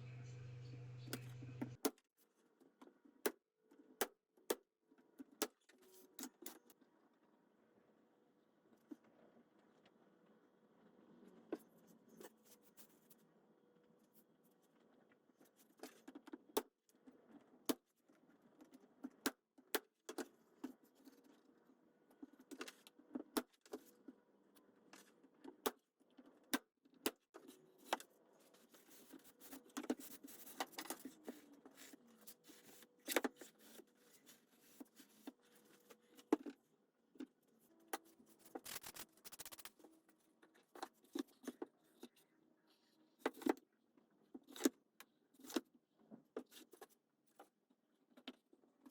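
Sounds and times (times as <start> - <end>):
faint steady hum: 0.0 - 1.8.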